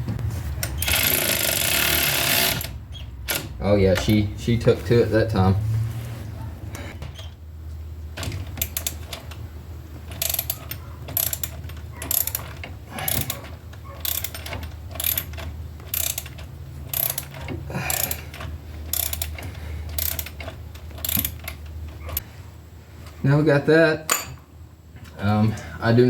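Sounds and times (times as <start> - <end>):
cordless ratchet motor hum: 0.7 - 3.5, 10.1 - 22.2
sharp ratcheting clicks: 0.7 - 4.2, 10.1 - 13.4, 14.0 - 22.2.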